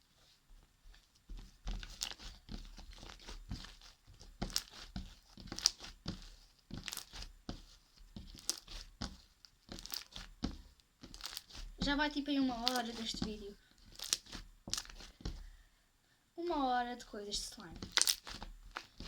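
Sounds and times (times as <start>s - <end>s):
slime squished by hand crackling: 1.5s - 15.4s, 17.8s - 19.0s.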